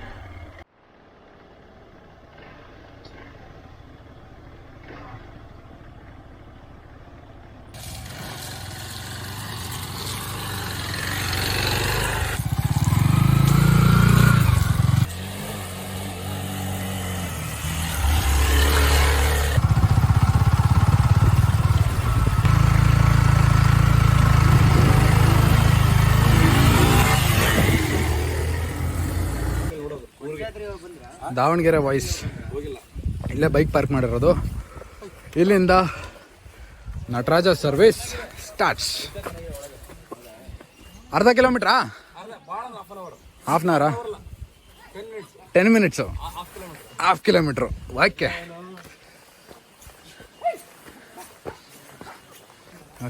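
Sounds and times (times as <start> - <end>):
motorcycle engine revving: 0.0 - 29.7.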